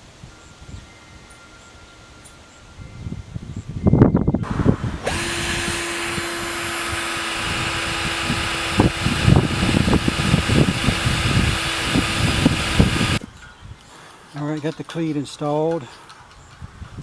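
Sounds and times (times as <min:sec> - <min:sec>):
power drill driving screws: 0:04.5 - 0:13.2.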